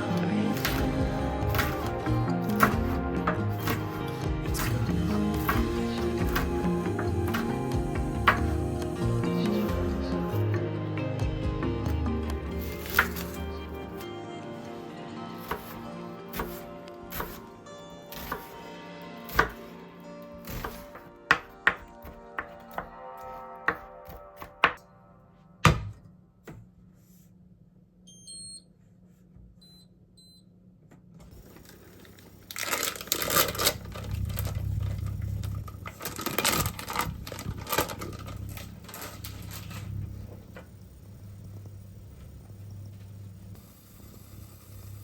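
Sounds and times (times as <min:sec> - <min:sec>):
soft background music: 0:00.0 - 0:26.4
knife chopping on cutting board: 0:01.5 - 0:04.0, 0:19.3 - 0:19.6, 0:20.4 - 0:23.0
kitchen clattering and rustling: 0:31.4 - 0:40.0.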